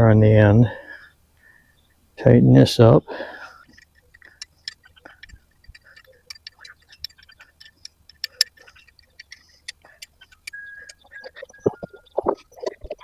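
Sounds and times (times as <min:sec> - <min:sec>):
flaring tool metallic clicks: 0:03.7 - 0:11.6.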